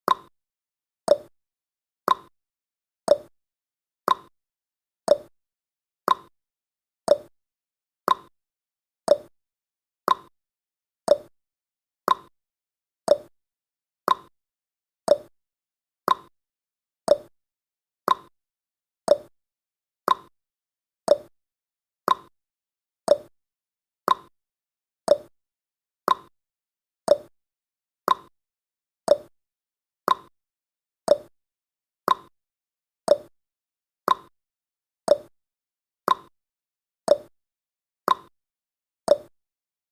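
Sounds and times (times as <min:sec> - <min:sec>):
clock ticking: 0:01.1 - 0:01.3, 0:03.1 - 0:03.3, 0:05.1 - 0:05.3, 0:07.1 - 0:07.3, 0:09.1 - 0:09.3, 0:11.1 - 0:11.3, 0:13.1 - 0:13.3, 0:15.1 - 0:15.3, 0:19.1 - 0:19.3, 0:21.1 - 0:21.3, 0:29.1 - 0:29.3, 0:31.1 - 0:31.3, 0:33.1 - 0:33.3, 0:35.1 - 0:35.3, 0:37.1 - 0:37.3, 0:39.1 - 0:39.3.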